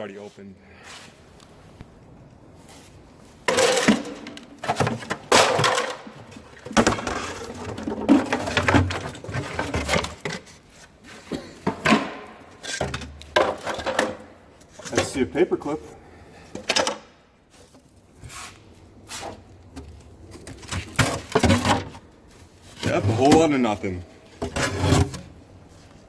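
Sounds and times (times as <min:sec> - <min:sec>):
objects clattering and knocking: 0:03.3 - 0:15.7, 0:16.4 - 0:18.1, 0:19.1 - 0:25.4.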